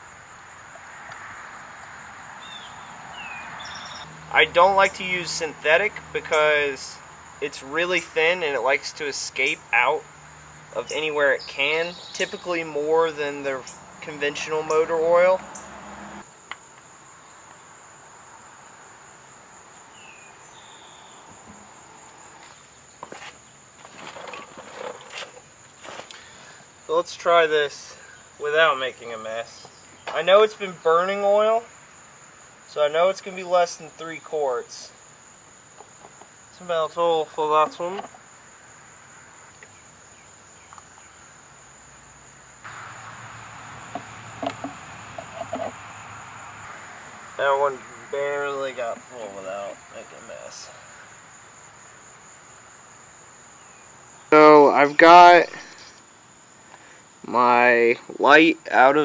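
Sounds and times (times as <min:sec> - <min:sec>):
background hiss: 0:00.0 - 0:59.0
background noise: 0:00.0 - 0:59.0
crickets trilling: 0:00.0 - 0:59.0
falling chirp: 0:02.4 - 0:04.1.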